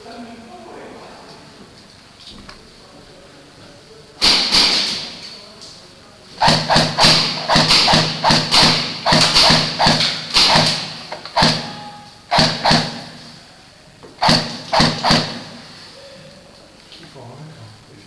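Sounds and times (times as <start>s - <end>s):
airsoft guns firing: 4.2s - 5.2s, 6.4s - 13.4s, 14.2s - 15.8s.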